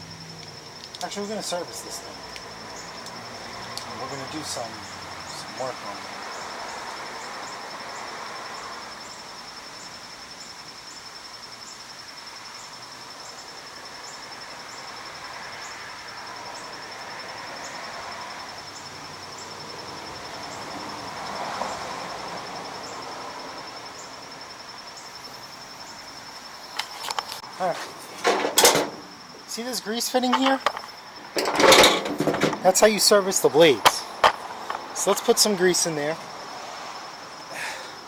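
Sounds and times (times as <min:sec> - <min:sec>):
insects trilling: 0:00.0 - 0:38.0
short insect chirp: 0:00.0 - 0:38.0
soft outdoor hiss: 0:00.0 - 0:38.0.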